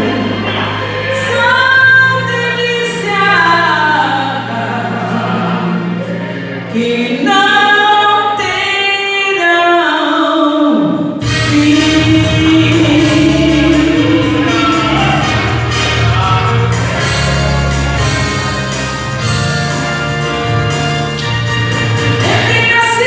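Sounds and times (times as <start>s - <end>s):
low sustained accompaniment: 0.0s - 6.8s, 11.2s - 22.7s
woman singing a hymn: 1.0s - 6.0s, 6.7s - 15.4s, 22.3s - 23.0s.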